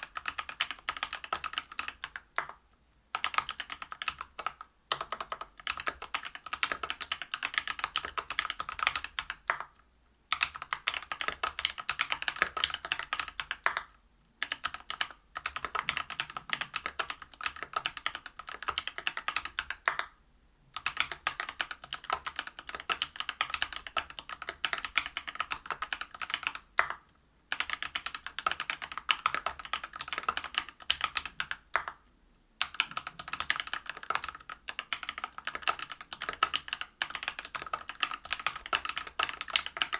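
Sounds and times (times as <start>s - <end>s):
fast mechanical keyboard typing: 0.0s - 2.6s, 3.2s - 9.7s, 10.3s - 20.1s, 20.8s - 32.0s, 32.6s - 39.9s.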